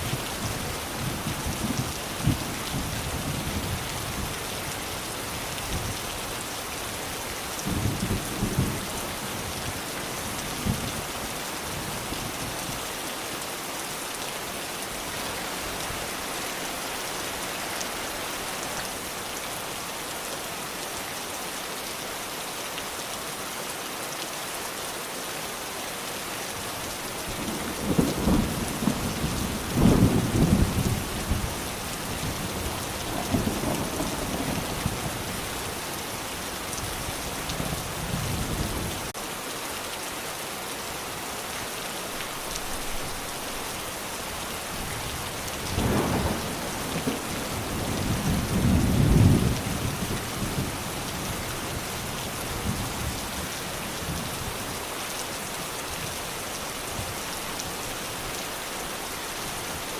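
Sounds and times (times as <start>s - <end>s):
steady rain: 0.0s - 59.9s
distant thunder: 45.7s - 49.6s.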